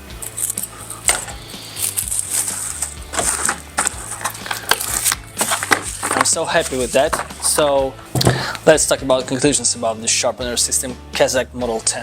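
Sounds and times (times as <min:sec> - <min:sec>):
scissors snipping: 0:00.2 - 0:03.0.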